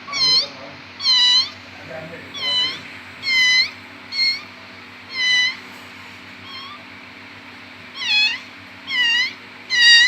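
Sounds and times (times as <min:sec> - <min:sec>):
cat meowing: 0:00.0 - 0:01.7, 0:02.3 - 0:05.6, 0:06.4 - 0:06.9, 0:07.9 - 0:10.0.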